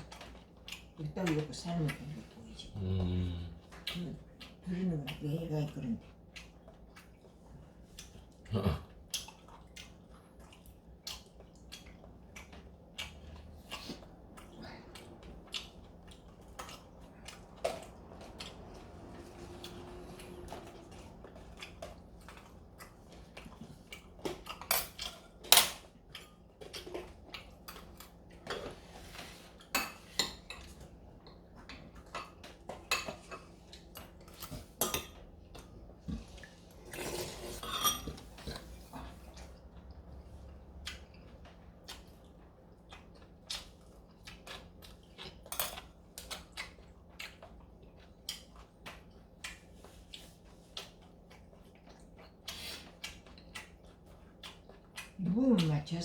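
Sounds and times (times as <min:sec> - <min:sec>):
cutlery clinking against dishes: 0:37.6 - 0:38.2.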